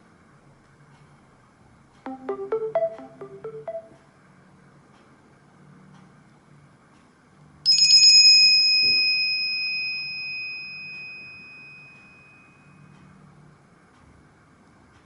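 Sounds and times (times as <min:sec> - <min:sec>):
bell-like phone chime: 0:02.1 - 0:04.0, 0:07.7 - 0:12.4.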